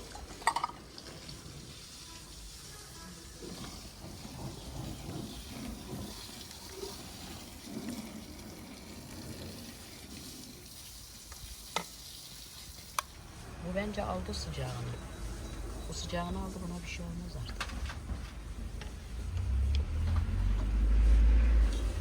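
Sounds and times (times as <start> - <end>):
food sizzling in a pan: 0.0 - 15.8.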